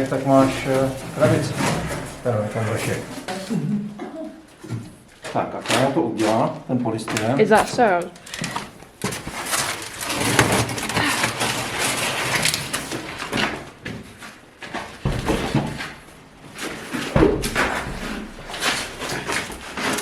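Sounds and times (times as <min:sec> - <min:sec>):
heavy thumps: 0:00.0 - 0:03.3, 0:15.0 - 0:16.0, 0:17.1 - 0:20.0
plastic wrap rustling and scraping: 0:00.0 - 0:03.6, 0:04.5 - 0:20.0.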